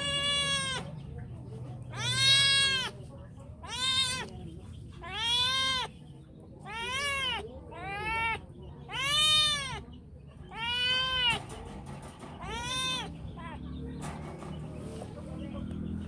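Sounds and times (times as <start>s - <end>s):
cat meowing: 0.0s - 1.0s, 1.9s - 3.0s, 3.6s - 4.4s, 5.0s - 5.9s, 6.6s - 11.5s, 12.4s - 13.6s.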